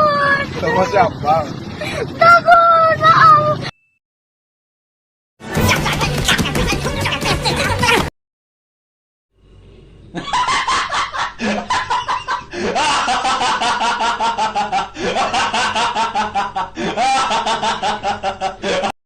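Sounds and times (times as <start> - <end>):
high-pitched laughter: 5.5 - 8.1.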